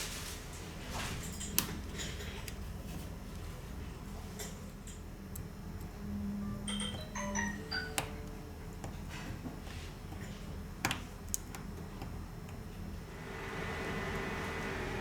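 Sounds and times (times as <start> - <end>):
electronic chime: 6.5 - 8.6.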